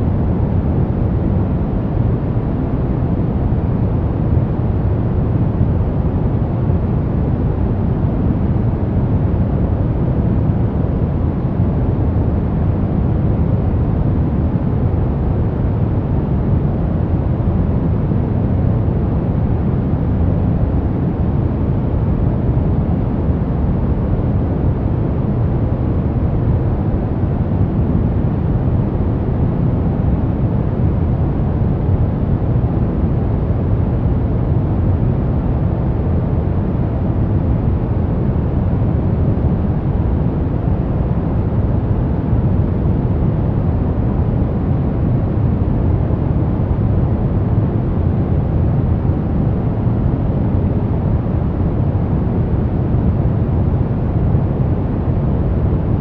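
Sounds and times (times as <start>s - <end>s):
deep white noise rush: 0.0s - 56.0s.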